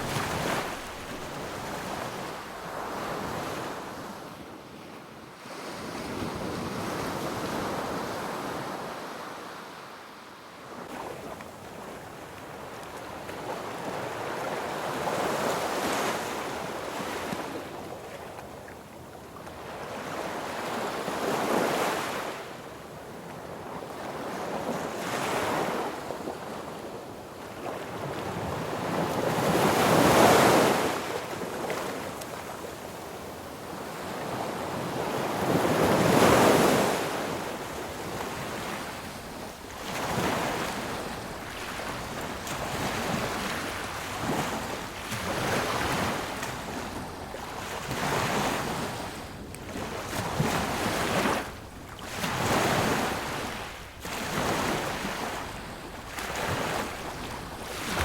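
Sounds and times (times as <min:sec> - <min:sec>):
sea waves breaking on beach: 0:00.0 - 0:04.3, 0:27.7 - 0:58.0.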